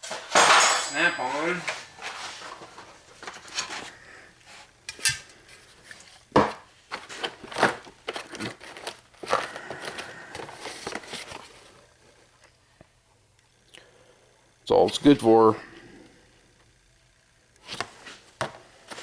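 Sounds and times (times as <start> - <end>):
metal tools clinking: 0.0 - 2.6, 4.9 - 5.4.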